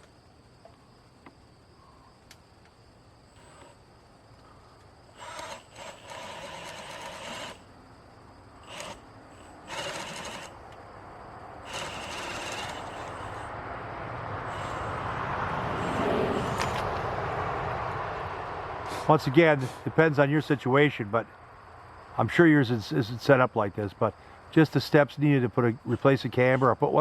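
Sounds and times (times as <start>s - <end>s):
insects chirping: 0.0s - 27.0s
power drill boring wood: 3.4s - 3.8s, 5.1s - 7.7s, 8.6s - 10.6s, 11.6s - 13.5s, 14.5s - 15.0s
broad rushing noise: 11.6s - 20.0s.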